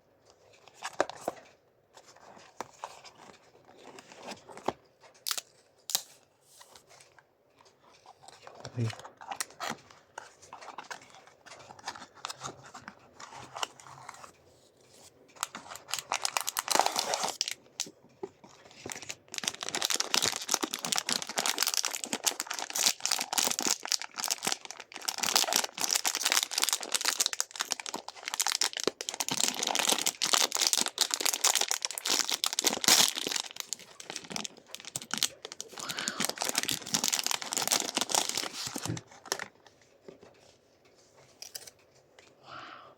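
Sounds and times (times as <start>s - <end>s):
packaging torn and crinkled: 15.4s - 39.5s.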